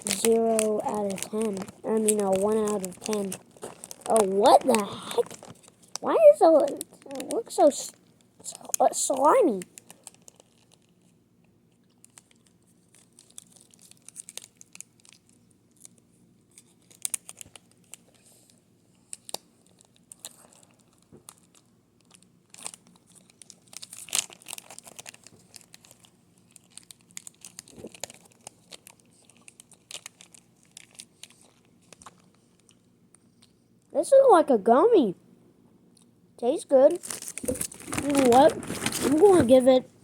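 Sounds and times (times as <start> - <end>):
chewing gummy candy: 0.0 - 10.9, 11.7 - 15.9, 19.2 - 32.8
plastic wrapper crinkling: 0.0 - 33.5, 36.9 - 39.8.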